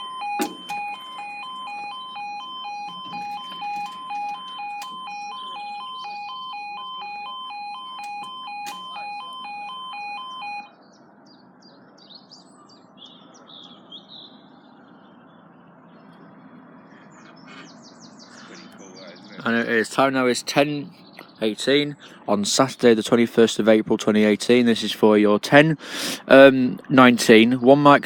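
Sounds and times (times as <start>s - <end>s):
two-tone crossing alarm: 0.0s - 10.8s
birds chirping and singing: 0.4s - 9.6s, 10.2s - 28.0s.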